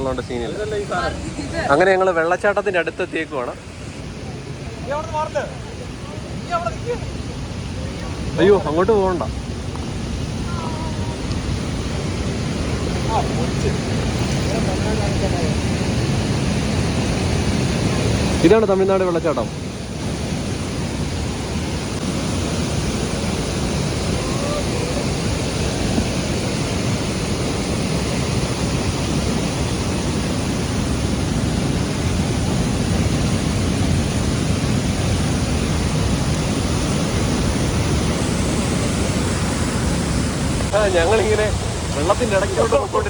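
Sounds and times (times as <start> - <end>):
waterfall roaring: 0.0 - 43.0.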